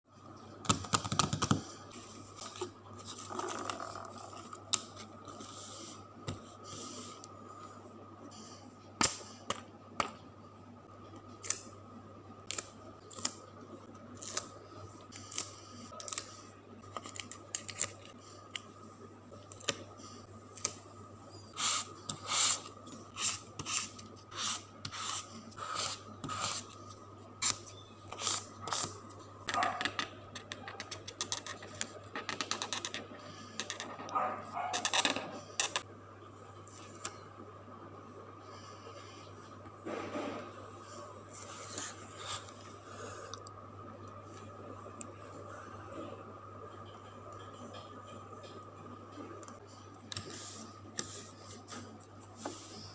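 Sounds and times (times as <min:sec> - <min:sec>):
faint steady hum: 0:00.0 - 0:52.9.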